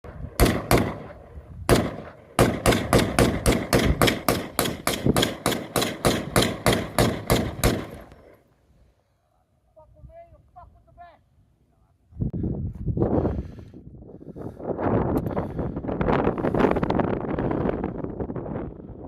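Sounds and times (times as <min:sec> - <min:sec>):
rifle gunshots with echo: 0:00.0 - 0:08.3.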